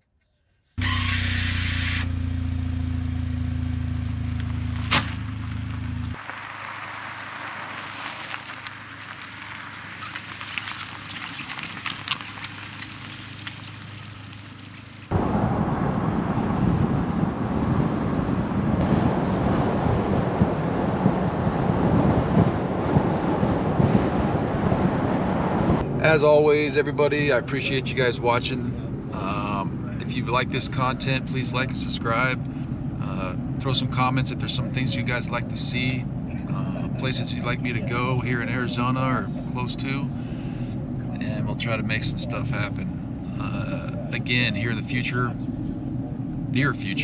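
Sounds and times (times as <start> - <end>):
rustling: 4.4 - 15.1
loud rumbling noise: 15.1 - 34.8
steady low hum: 25.8 - 47.0.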